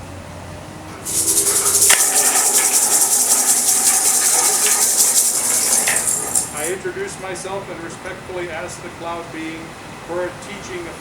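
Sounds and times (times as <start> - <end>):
rattle shaken rapidly: 1.0 - 6.8.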